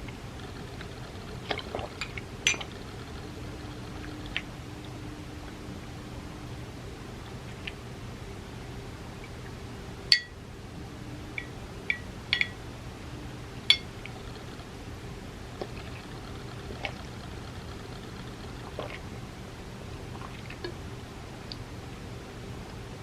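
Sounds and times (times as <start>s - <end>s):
low hum: 0.0s - 23.0s
glass clinking: 2.0s - 2.7s, 10.1s - 10.4s, 11.4s - 12.6s, 13.7s - 13.9s.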